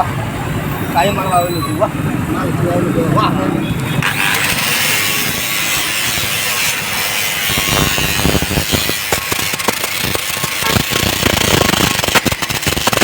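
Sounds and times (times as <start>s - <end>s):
sharp welding crackles: 4.0s - 13.0s
arc welding frying hiss: 4.1s - 13.0s.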